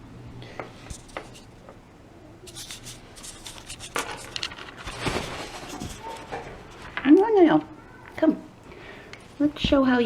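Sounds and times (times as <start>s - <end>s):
soft scratching and rustling: 0.8s - 1.6s, 2.5s - 8.3s.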